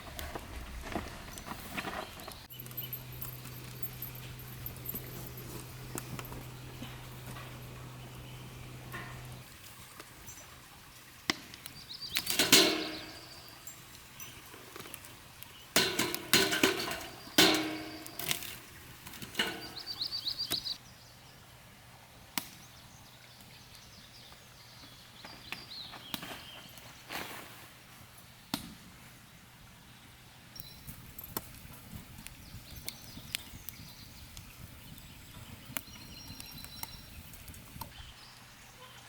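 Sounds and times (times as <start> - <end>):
knocks and scraping handling: 15.8 - 20.1
high bird chirps: 19.6 - 20.8.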